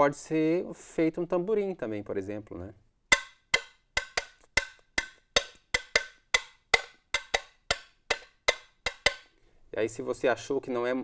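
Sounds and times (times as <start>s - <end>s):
metal tins clacking rhythmically: 3.1s - 9.3s.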